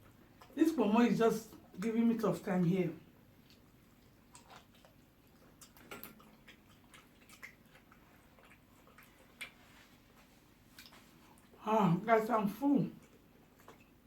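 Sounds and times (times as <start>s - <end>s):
eating clicks and smacks: 3.3s - 9.7s, 10.7s - 11.6s, 12.9s - 14.0s.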